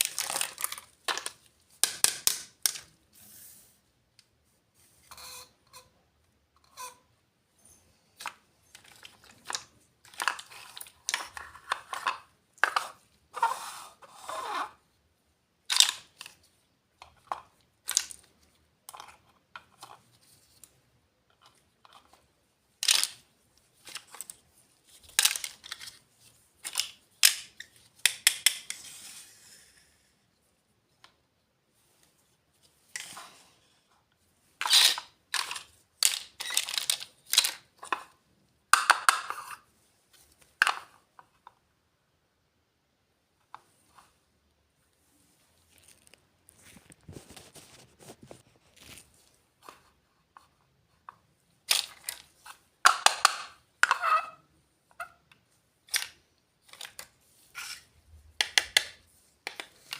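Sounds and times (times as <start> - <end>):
packaging crinkling and tearing: 0.0 - 1.3
small plastic pieces clicking: 0.0 - 2.9, 15.7 - 16.4, 22.8 - 23.2, 25.1 - 26.0, 34.6 - 38.0, 51.7 - 52.3, 55.9 - 57.1, 58.4 - 59.9.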